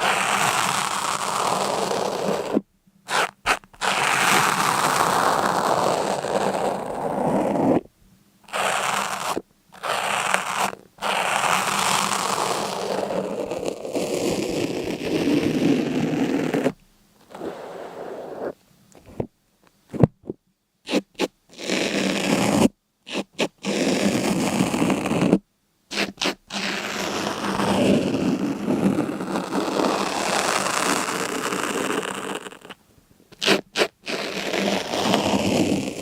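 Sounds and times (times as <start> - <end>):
rough scraping: 8.5 - 19.3.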